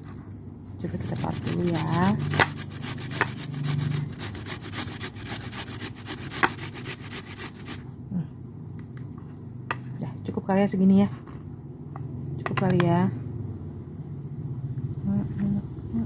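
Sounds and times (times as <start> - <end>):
onion scraping on a grater: 0.8 - 7.8.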